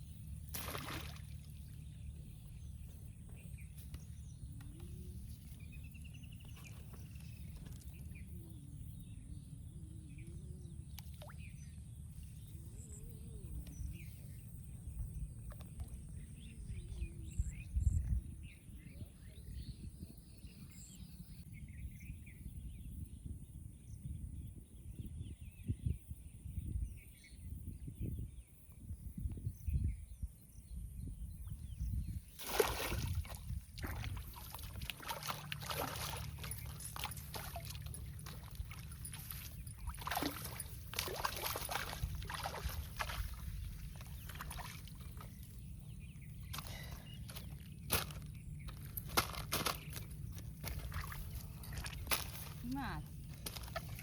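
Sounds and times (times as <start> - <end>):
water splashing and sloshing: 0.4 - 2.4, 32.3 - 54.0
low steady rumble: 33.0 - 54.0.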